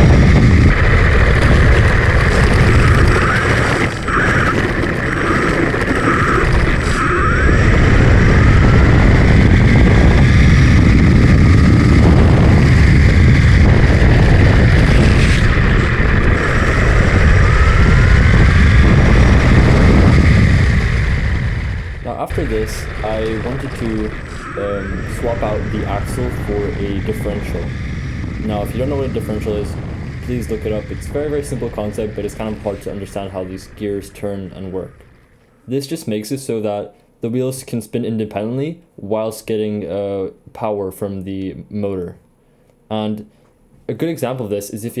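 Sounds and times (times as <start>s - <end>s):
toy car electric motor whine: 0.0s - 35.2s
heavy low rumble: 0.0s - 35.6s.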